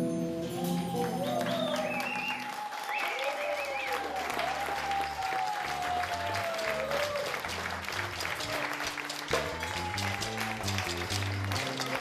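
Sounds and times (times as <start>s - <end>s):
whistles: 0.5s - 5.2s
audience applauding: 0.6s - 12.0s.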